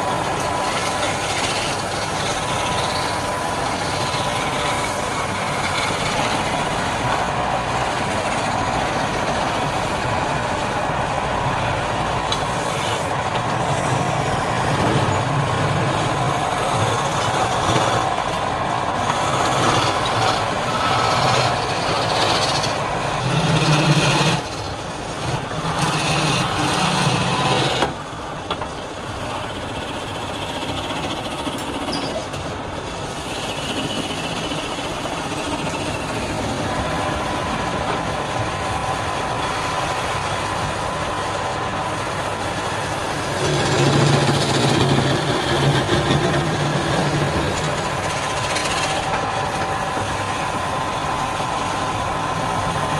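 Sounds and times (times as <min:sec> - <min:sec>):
wood lathe running: 0:00.0 - 0:52.9.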